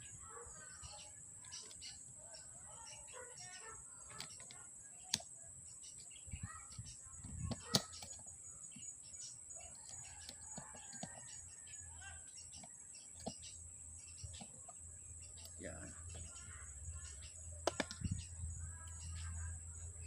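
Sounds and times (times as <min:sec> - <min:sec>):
small birds chirping: 0:00.0 - 0:20.0
sharp clicks: 0:04.1 - 0:05.4, 0:06.8 - 0:08.3, 0:17.2 - 0:19.0.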